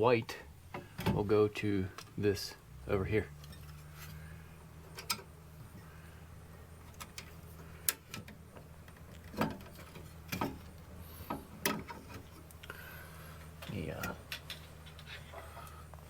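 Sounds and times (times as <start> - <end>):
steady low hum: 0.0 - 16.0
hand tools and wire clicking: 3.4 - 4.2, 4.8 - 5.9, 6.8 - 16.0.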